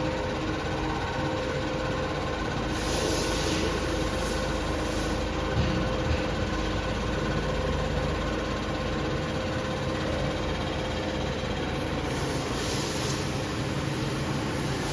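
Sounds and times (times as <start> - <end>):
hiss: 2.7 - 5.3, 12.0 - 14.9.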